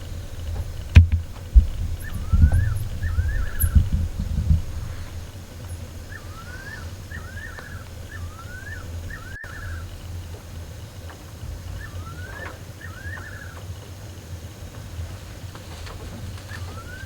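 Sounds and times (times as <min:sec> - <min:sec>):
low rumbles and thumps: 0:00.0 - 0:17.0
animal call dipping and rising: 0:02.0 - 0:10.1, 0:11.6 - 0:13.8.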